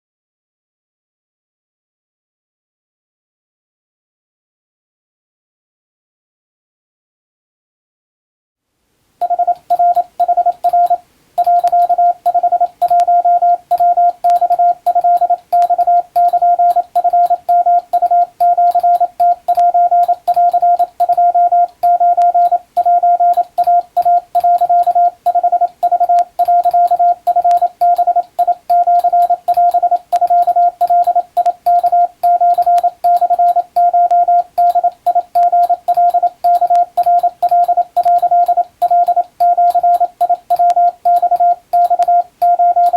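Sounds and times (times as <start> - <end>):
morse code tone: 9.2 - 42.9.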